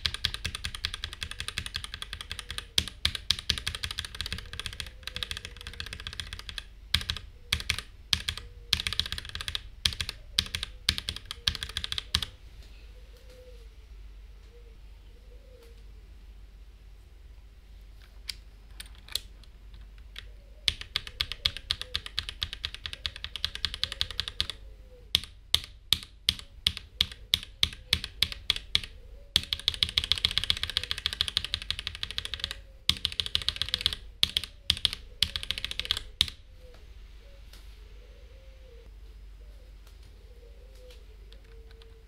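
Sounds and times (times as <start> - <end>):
typing on mechanical keyboard: 0.0 - 12.3, 20.0 - 36.4.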